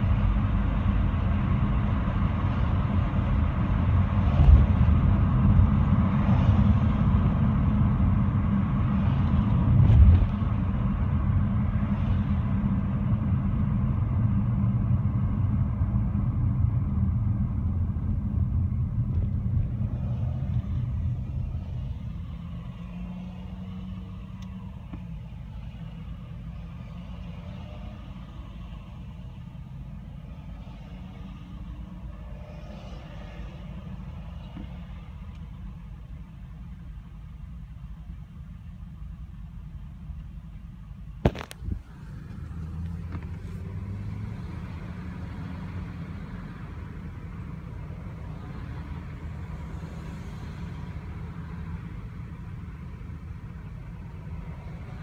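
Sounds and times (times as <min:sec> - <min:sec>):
engine and road rumble in cabin: 0:00.0 - 0:55.0
thumps: 0:41.2 - 0:41.8.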